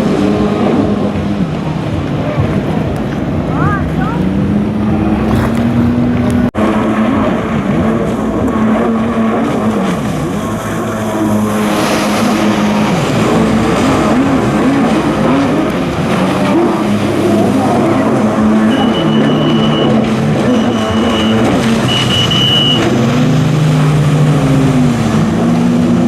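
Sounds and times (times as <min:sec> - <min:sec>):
jet ski engines revving: 0:00.0 - 0:26.0.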